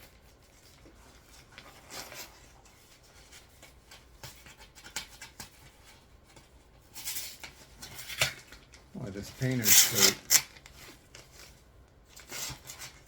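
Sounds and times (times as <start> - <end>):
packaging rustling and scratching: 0.0 - 13.0
sharp scrapes: 9.6 - 10.4.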